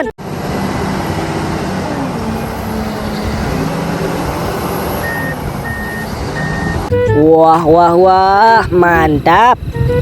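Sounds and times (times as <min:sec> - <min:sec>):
wheel loader engine rumbling: 0:00.0 - 0:10.0.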